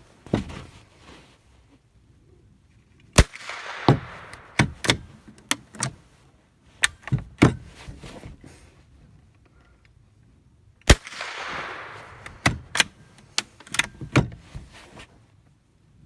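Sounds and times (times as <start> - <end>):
rifle shot: 3.2 - 5.0, 10.9 - 12.9
sharp cracks and clicks: 3.2 - 5.9, 10.8 - 13.9.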